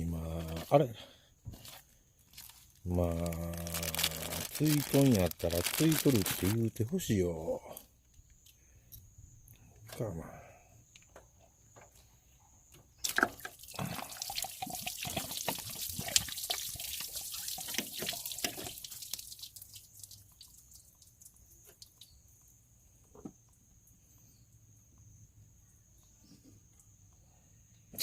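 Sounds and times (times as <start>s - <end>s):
liquid pouring and splashing: 3.7s - 6.6s, 13.0s - 22.0s
water dripping: 13.0s - 22.6s.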